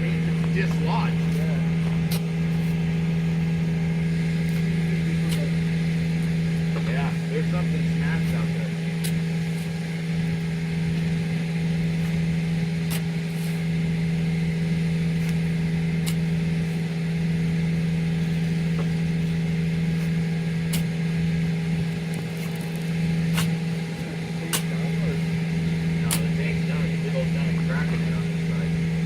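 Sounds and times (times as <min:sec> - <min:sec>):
engine running steadily: 0:00.0 - 0:29.0.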